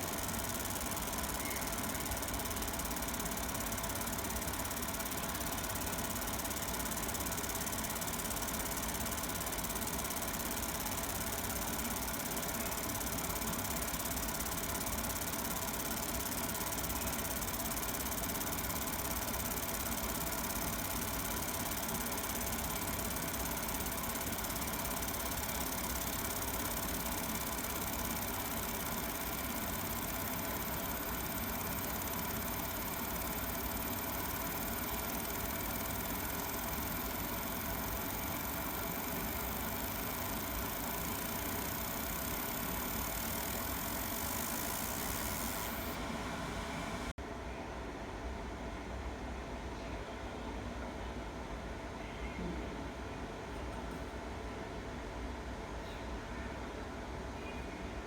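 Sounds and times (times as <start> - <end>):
faint steady tones: 0.0 - 47.1
laser machine hum and hiss: 0.0 - 47.2.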